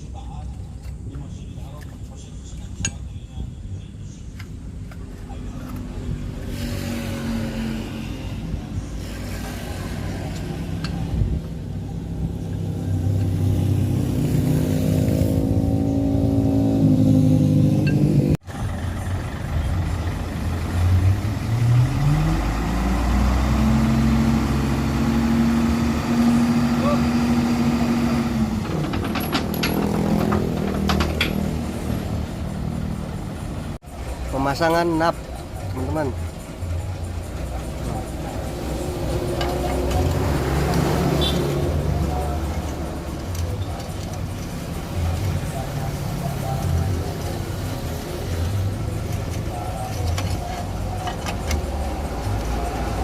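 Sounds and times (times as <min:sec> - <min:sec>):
vehicle engine running: 0:00.0 - 0:53.0
metal parts clinking: 0:28.6 - 0:31.6.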